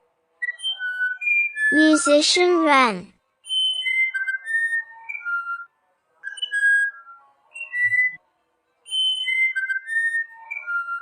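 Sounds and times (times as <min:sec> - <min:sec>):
bird singing whistled notes: 0:00.4 - 0:02.0, 0:03.4 - 0:05.7, 0:08.9 - 0:11.0.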